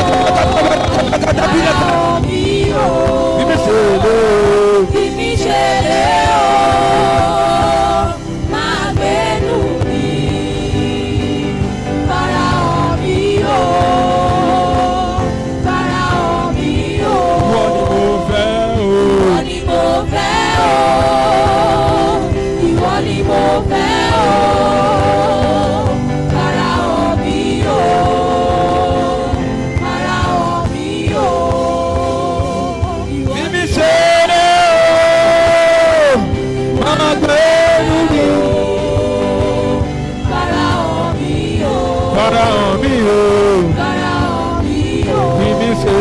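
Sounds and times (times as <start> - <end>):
instrumental backing: 0.0 - 46.0
person singing gospel: 0.0 - 46.0.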